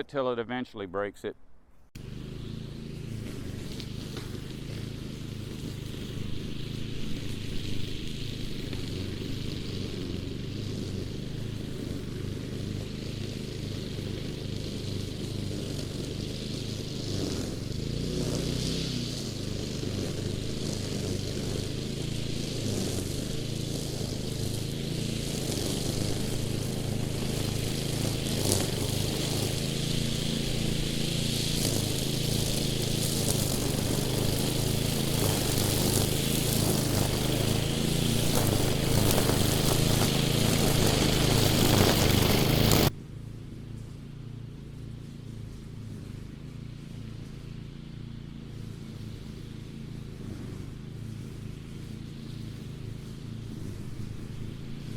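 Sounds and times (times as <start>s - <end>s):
string mower engine running: 2.0s - 54.9s
cords whipping through brush: 14.9s - 42.9s.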